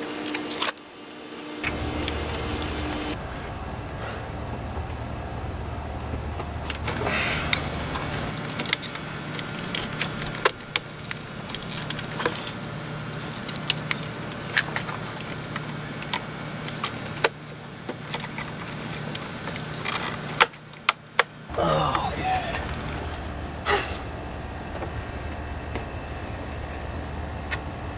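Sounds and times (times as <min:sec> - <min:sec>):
low hum: 0:01.6 - 0:14.9.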